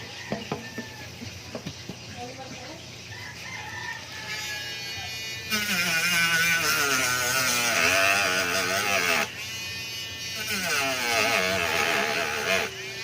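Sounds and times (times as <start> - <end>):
power tool whining: 4.2 - 13.0.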